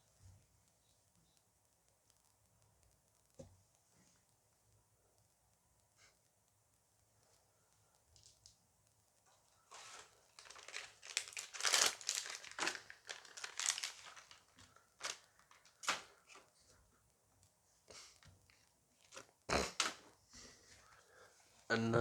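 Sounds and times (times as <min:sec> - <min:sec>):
foil pack tearing and crinkling: 0:09.7 - 0:16.4.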